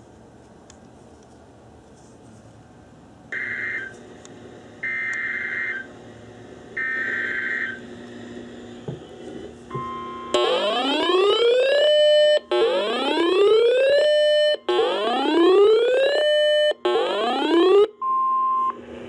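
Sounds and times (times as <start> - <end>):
electronic whoop alarm: 6.8 - 7.8, 9.8 - 18.7
short steady beep: 18.0 - 18.8.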